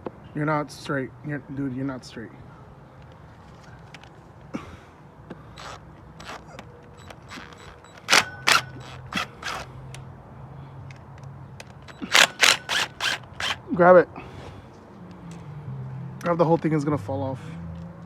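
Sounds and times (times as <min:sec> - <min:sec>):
impact wrench bursts: 0:05.4 - 0:10.1, 0:11.8 - 0:13.8.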